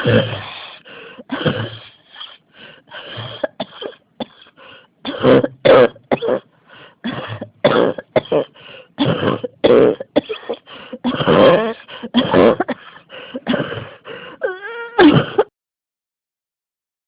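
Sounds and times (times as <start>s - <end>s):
person coughing harshly: 0.0s - 0.6s, 1.2s - 2.4s, 3.0s - 15.5s
wheezing breath in: 0.0s - 3.5s, 6.6s - 7.0s, 8.5s - 9.0s, 12.9s - 14.4s.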